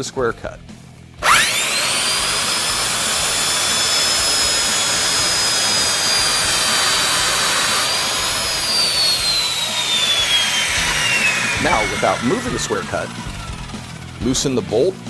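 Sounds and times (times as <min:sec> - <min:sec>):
circular saw cutting a board: 0:01.2 - 0:15.0.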